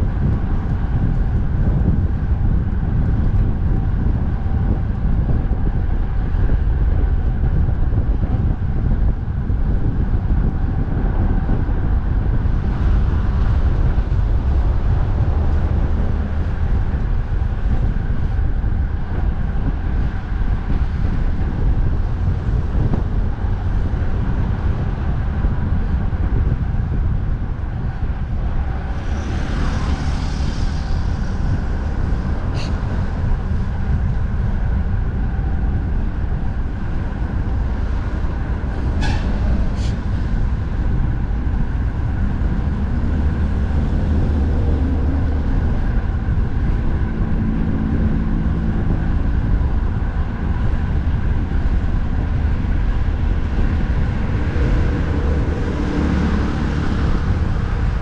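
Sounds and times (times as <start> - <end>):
road traffic: 0.0 - 58.0
wind buffeting microphone: 0.0 - 58.0.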